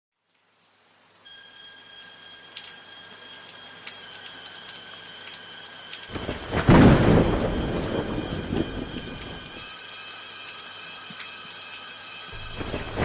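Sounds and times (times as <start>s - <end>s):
steady rain falling: 0.1s - 13.0s
thunderclap and rumble: 6.1s - 9.6s, 12.4s - 13.0s.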